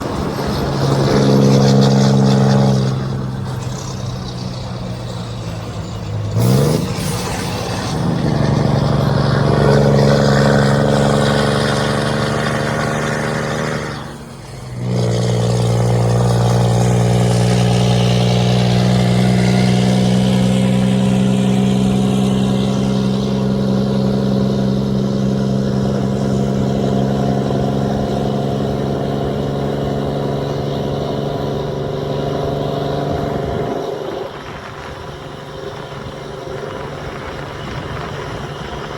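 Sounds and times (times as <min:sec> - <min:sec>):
truck engine exhaust rumble: 0:00.0 - 0:38.9.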